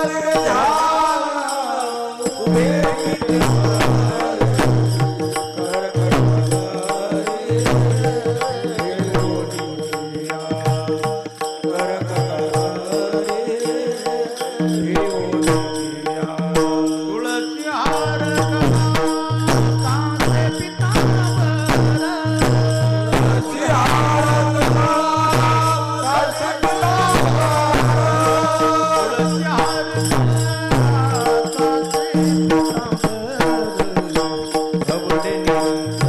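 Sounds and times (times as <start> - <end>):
man singing: 0.0 - 36.0.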